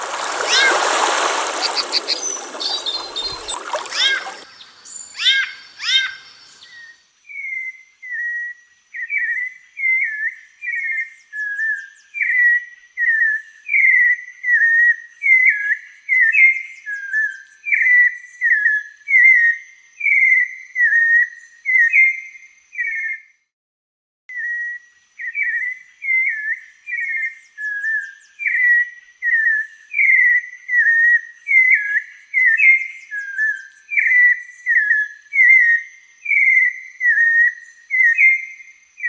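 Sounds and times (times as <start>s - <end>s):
songbird whistling: 0.2s - 4.4s.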